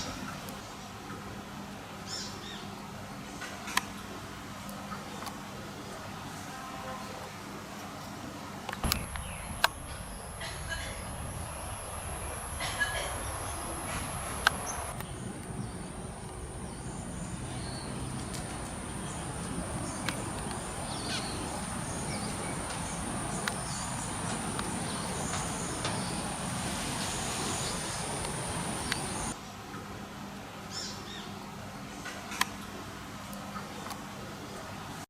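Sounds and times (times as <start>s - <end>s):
sharp clicks: 8.7s - 15.1s
thin high steady tone: 8.8s - 15.0s
steady background rush: 8.8s - 29.4s.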